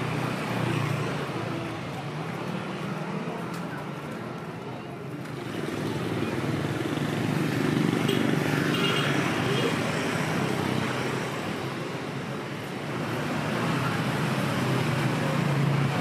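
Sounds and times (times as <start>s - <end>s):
motor traffic passing: 0.0s - 16.0s
voices in background: 0.3s - 7.9s.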